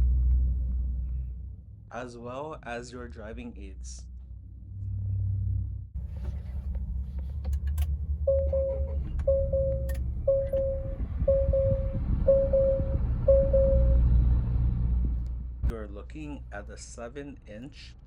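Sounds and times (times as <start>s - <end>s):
low engine rumble: 0.0s - 18.0s
dashboard warning chime beeping: 8.3s - 14.1s.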